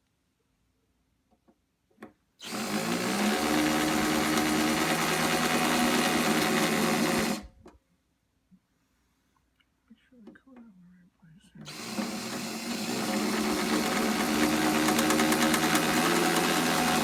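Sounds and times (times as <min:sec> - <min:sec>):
electric drill boring: 0:02.4 - 0:07.5, 0:11.7 - 0:17.0.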